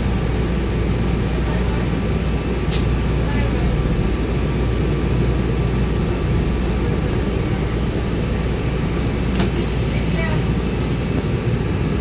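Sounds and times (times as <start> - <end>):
bus engine and road rumble: 0.0 - 12.0.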